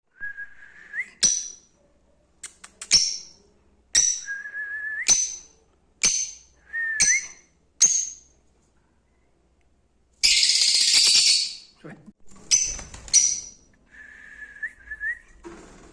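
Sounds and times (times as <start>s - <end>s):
bird shrill chirps: 10.2s - 11.7s.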